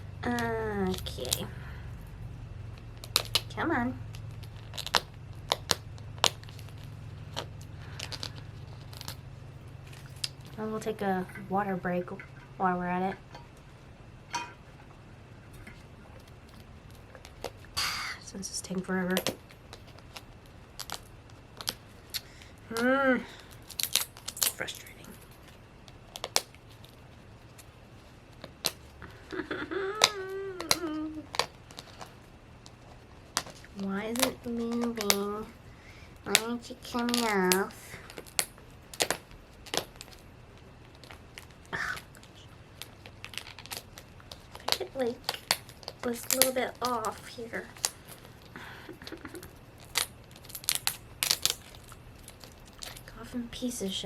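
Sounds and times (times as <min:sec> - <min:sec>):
steady low hum: 0:00.0 - 0:54.0
plastic wrapping crinkling and tearing: 0:02.8 - 0:11.2, 0:15.7 - 0:54.0
plastic capsule clicks: 0:30.0 - 0:32.1.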